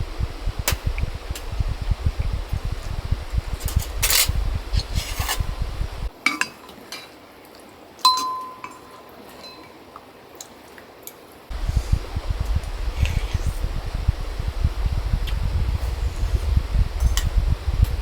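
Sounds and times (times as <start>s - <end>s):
low rumbling noise with ticks: 0.0s - 6.1s, 11.5s - 18.0s.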